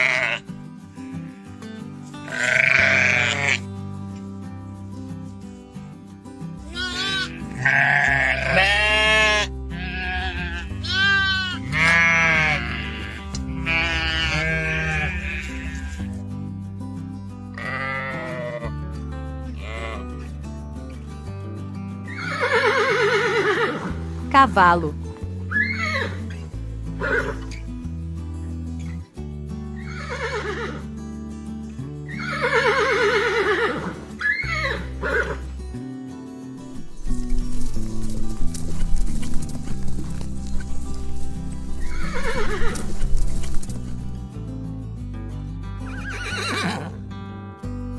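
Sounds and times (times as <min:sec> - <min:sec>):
horse neighing: 0:00.0 - 0:00.4, 0:02.3 - 0:03.6, 0:06.8 - 0:16.1, 0:17.6 - 0:18.6, 0:22.1 - 0:23.9, 0:25.5 - 0:26.2, 0:27.0 - 0:27.6, 0:29.8 - 0:30.8, 0:32.1 - 0:35.4, 0:41.7 - 0:43.8, 0:45.9 - 0:47.0
sheep bleating: 0:00.0 - 0:00.6, 0:02.2 - 0:03.7, 0:06.6 - 0:16.2, 0:17.5 - 0:18.8, 0:19.6 - 0:20.3, 0:40.6 - 0:43.4
background music: 0:00.0 - 0:47.9.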